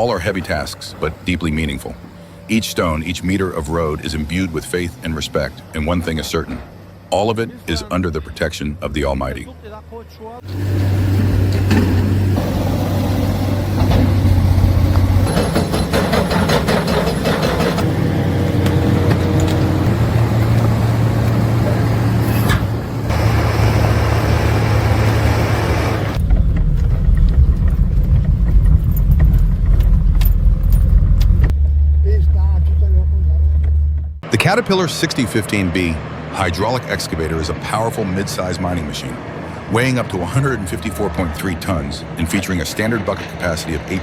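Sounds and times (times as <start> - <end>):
heavy diesel machinery drone: 0.0 - 44.0
metal clanking and rattling: 13.8 - 17.9, 26.2 - 31.7.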